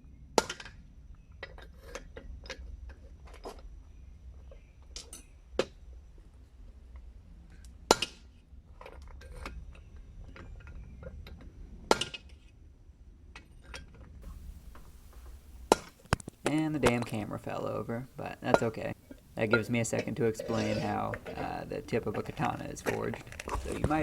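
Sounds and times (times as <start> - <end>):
low steady hum: 14.2 - 24.0
metal clinks and tool knocks: 18.5 - 24.0.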